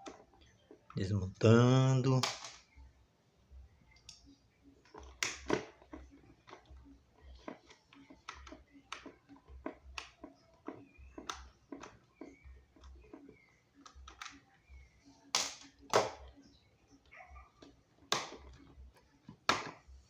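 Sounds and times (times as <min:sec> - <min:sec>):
plastic fan parts clicking: 0:01.6 - 0:02.8, 0:03.9 - 0:16.4.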